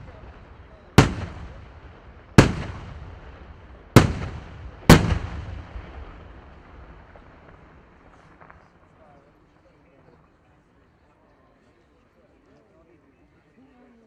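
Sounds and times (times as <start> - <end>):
rolling echo of bangs: 0.0 - 8.1.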